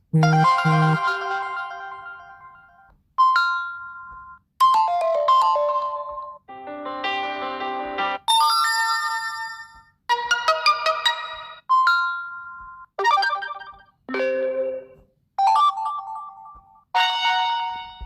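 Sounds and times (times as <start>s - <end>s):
phone melodic chimes: 0.2s - 1.5s.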